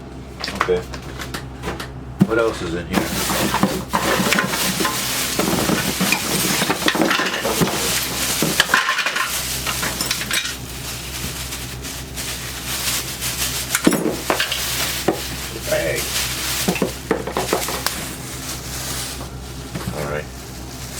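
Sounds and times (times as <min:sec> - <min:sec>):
paper and plastic rustling: 0:00.7 - 0:20.9.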